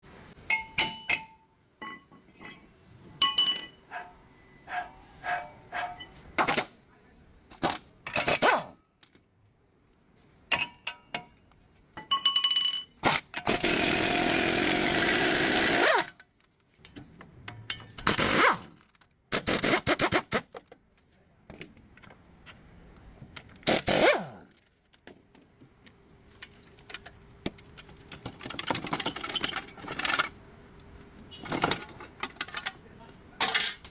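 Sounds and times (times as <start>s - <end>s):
metal clinks and strikes: 0.5s - 4.2s, 5.3s - 6.7s, 12.0s - 13.5s, 16.9s - 18.2s, 33.4s - 33.9s.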